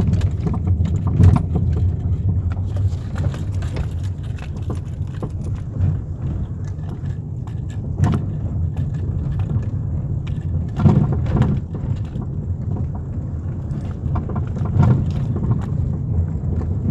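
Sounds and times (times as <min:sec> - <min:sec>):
low road rumble: 0:00.0 - 0:16.9.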